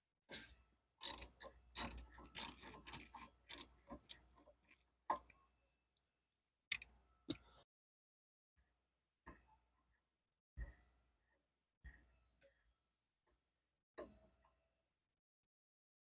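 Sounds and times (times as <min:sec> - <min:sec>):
socket ratchet clicking: 0:01.0 - 0:03.7.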